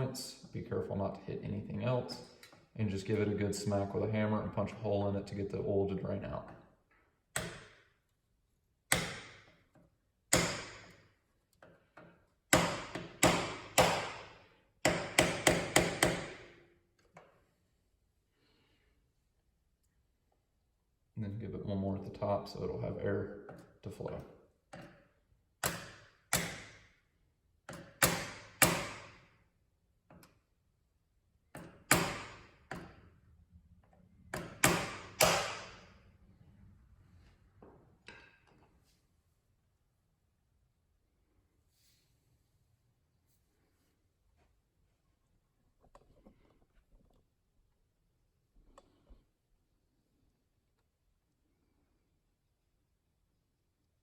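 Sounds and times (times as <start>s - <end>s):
hammer striking metal tool: 10.3s - 11.0s, 12.5s - 16.5s, 34.4s - 35.8s.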